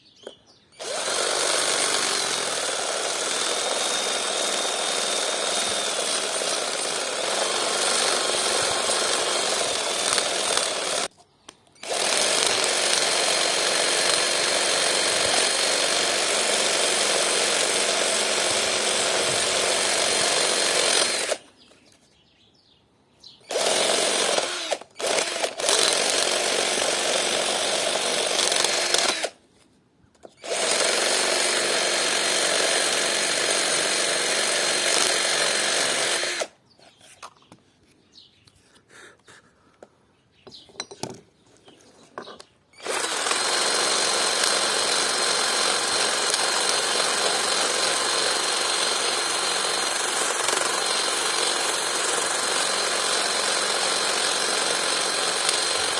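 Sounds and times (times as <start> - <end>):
electric drill sanding: 0.8 - 11.1, 11.8 - 21.4, 23.5 - 29.4, 30.4 - 36.5, 42.8 - 55.9.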